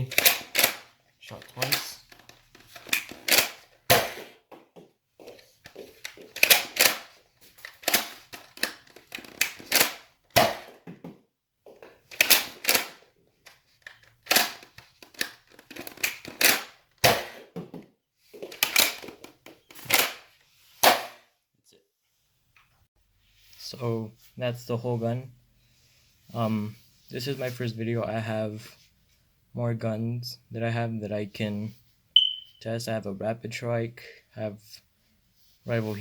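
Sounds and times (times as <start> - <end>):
plastic clacks of foam blaster: 0.0 - 4.7, 5.6 - 11.2, 11.9 - 21.3.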